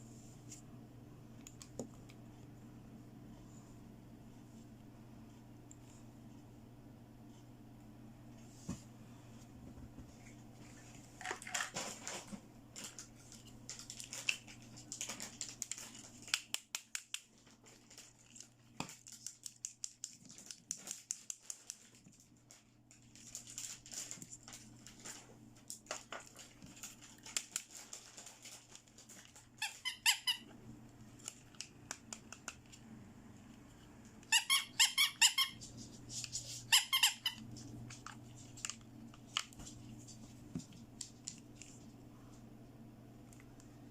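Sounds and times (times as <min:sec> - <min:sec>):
packaging rustling: 0:11.3 - 0:16.4, 0:20.2 - 0:29.6.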